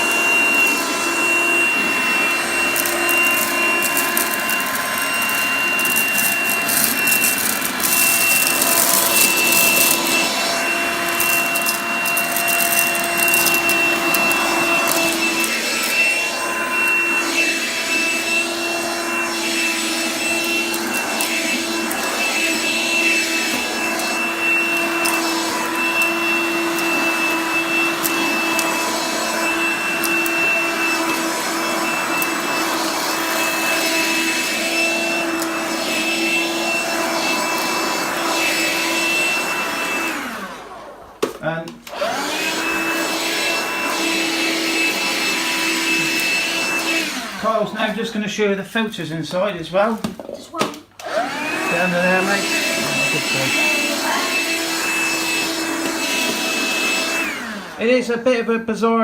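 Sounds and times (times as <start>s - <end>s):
handheld vacuum motor whine: 0.0s - 48.0s, 51.0s - 58.0s
dry pasta rattling into vacuum: 2.7s - 10.2s.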